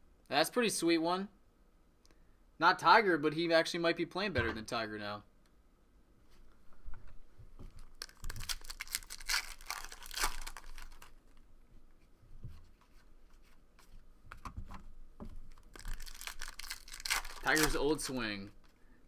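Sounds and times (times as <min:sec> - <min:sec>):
foil wrapper tearing and crinkling: 0:07.8 - 0:11.2, 0:15.5 - 0:18.8.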